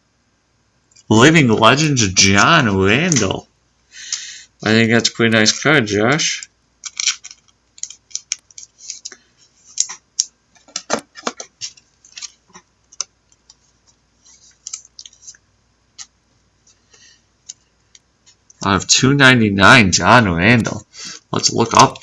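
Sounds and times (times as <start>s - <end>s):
trading cards being handled: 6.4s - 18.6s.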